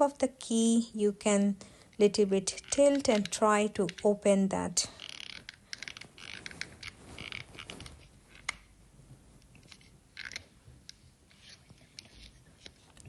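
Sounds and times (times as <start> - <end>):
plastic key fob creaking and clicking: 2.5 - 4.1, 5.0 - 8.6, 9.6 - 10.5.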